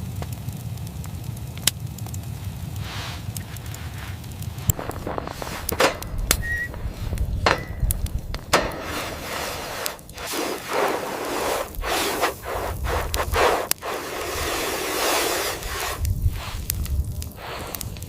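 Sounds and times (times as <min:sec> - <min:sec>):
scraping strokes: 0:02.8 - 0:18.0
sharp knocks: 0:07.4 - 0:10.0.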